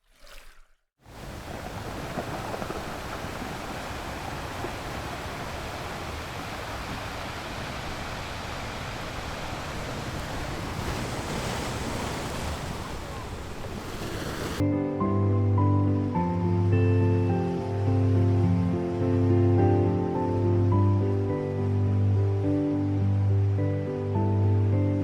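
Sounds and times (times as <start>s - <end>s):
ocean waves washing: 1.0s - 14.6s.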